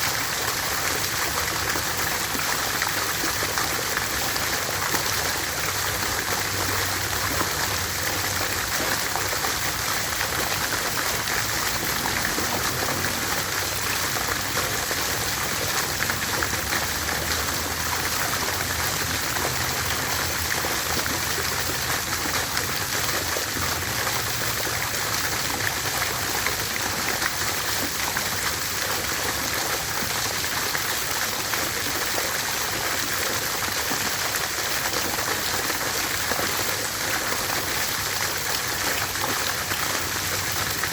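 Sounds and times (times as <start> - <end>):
water fountain splashing: 0.0 - 40.9.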